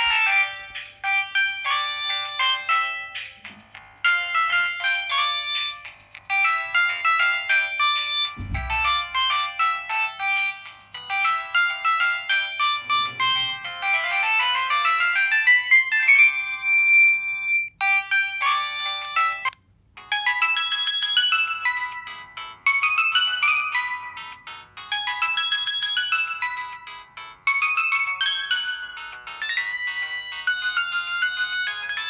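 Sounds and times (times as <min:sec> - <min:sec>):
mobile phone ringtone melodies: 0:00.0 - 0:32.0.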